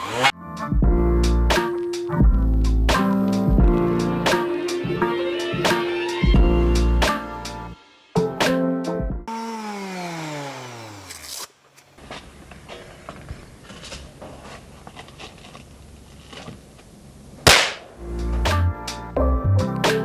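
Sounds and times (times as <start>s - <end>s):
background music: 0.3s - 9.3s, 17.5s - 20.0s.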